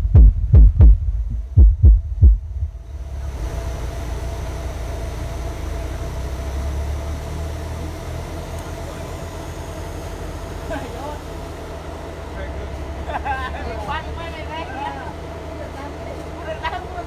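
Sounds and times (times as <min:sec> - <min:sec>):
deep bass thumps from loudspeakers: 0:00.0 - 0:03.0
low hum: 0:00.0 - 0:14.2
steady hiss: 0:00.0 - 0:17.0.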